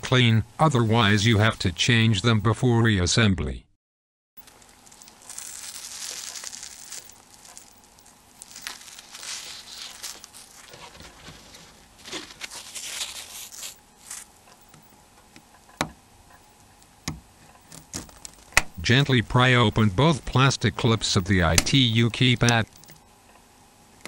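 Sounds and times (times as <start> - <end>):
plastic parts rustling and scraping: 4.4 - 19.1.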